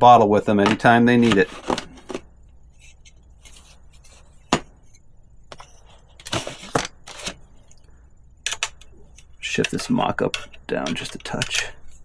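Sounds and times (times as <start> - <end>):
bottle cage clicks and knocks: 9.6 - 11.7.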